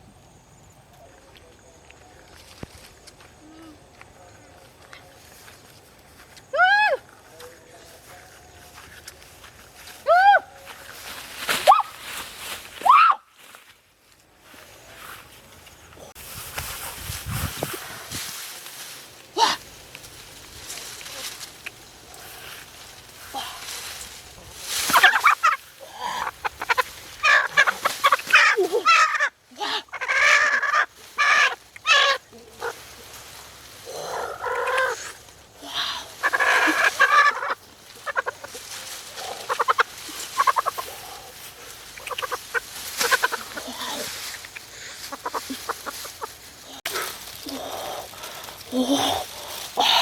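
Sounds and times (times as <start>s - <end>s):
chicken clucking: 26.2s - 28.5s, 36.2s - 38.6s, 39.2s - 41.0s, 42.0s - 43.7s, 44.4s - 46.4s.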